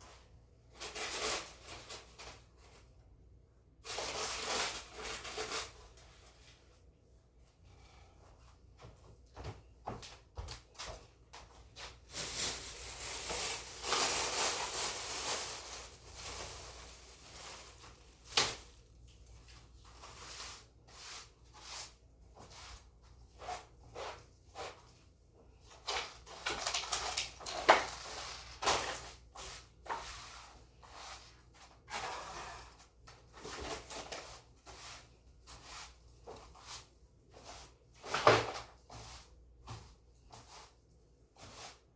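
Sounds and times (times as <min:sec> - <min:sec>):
swishing cleaning strokes on floor: 0:19.5 - 0:24.8, 0:29.3 - 0:31.7, 0:34.2 - 0:37.8, 0:38.8 - 0:41.9.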